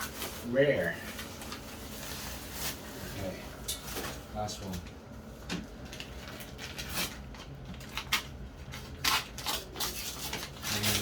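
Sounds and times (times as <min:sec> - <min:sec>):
packaging rustling and crinkling: 0:00.0 - 0:04.8, 0:05.4 - 0:11.0.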